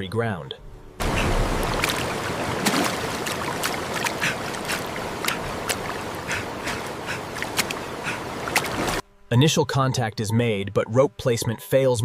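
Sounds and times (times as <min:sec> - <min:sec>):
floodwater rushing: 0:01.0 - 0:09.0
water splashes: 0:01.0 - 0:09.0.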